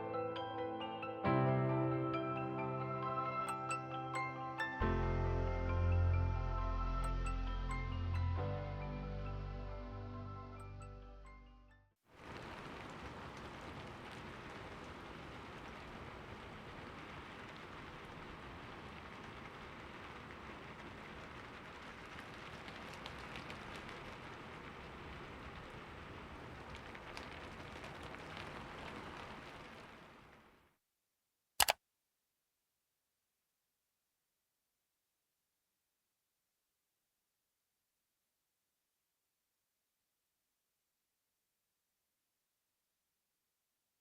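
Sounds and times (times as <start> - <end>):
music: 0.0 - 11.9
rain patter: 12.1 - 30.8.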